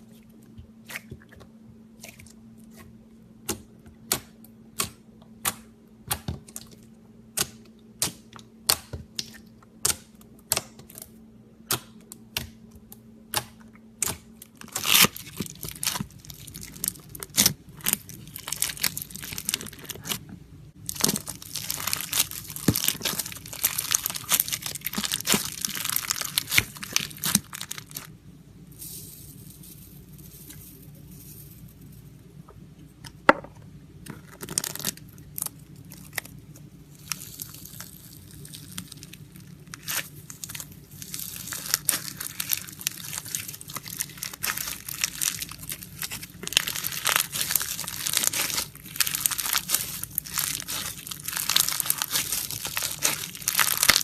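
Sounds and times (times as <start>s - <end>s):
slime popping and squelching: 13.3s - 20.2s, 20.8s - 28.1s, 36.9s - 54.0s.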